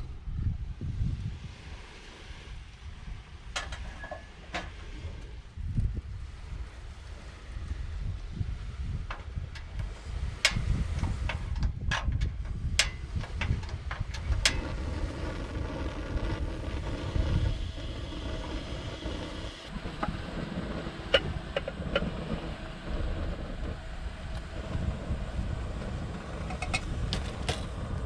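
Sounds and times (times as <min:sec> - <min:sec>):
wind on microphone: 0:00.0 - 0:28.0
sharp clicks and knocks: 0:10.4 - 0:14.8, 0:19.0 - 0:24.8.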